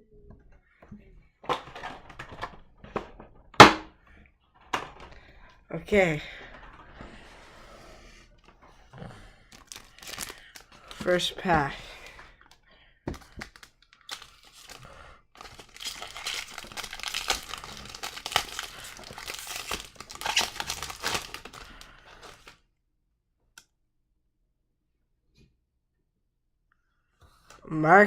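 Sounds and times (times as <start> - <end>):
wrapper tearing and crinkling: 9.5 - 12.0, 13.2 - 22.6.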